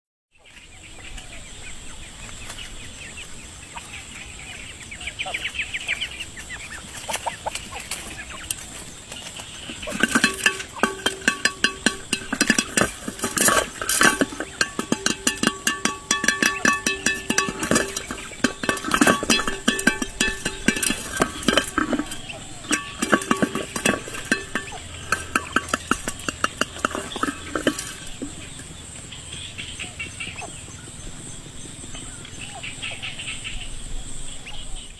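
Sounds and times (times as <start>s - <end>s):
quail chirping and calling: 0.4s - 9.9s, 29.1s - 33.8s
clicking and clinking strikes: 9.6s - 29.7s.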